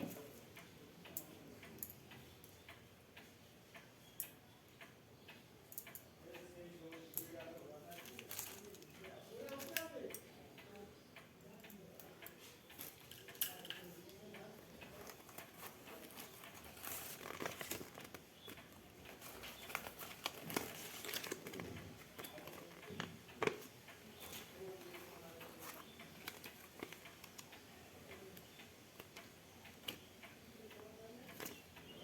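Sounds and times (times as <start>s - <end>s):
small clicks and taps: 0.0s - 32.0s
packaging rustling: 14.9s - 18.2s, 19.1s - 22.8s.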